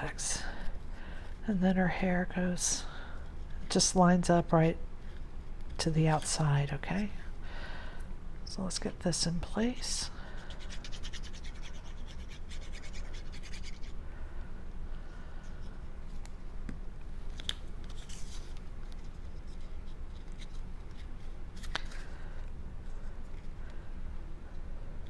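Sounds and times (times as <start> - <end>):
steady low hum: 0.0 - 25.0
paper scratching and rubbing: 10.5 - 14.0.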